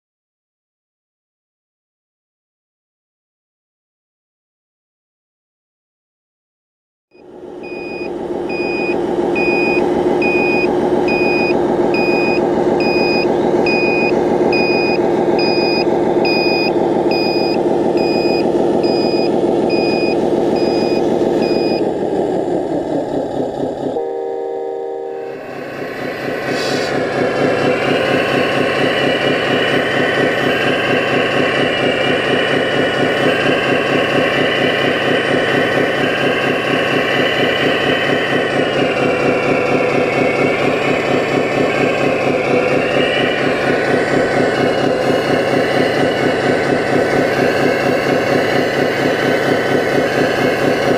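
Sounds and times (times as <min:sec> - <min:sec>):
reversing beeper: 0:07.1 - 0:21.9, 0:24.0 - 0:32.2, 0:39.2 - 0:50.7
diesel engine sound: 0:07.1 - 0:50.9
high whine: 0:07.2 - 0:22.8, 0:24.0 - 0:32.2.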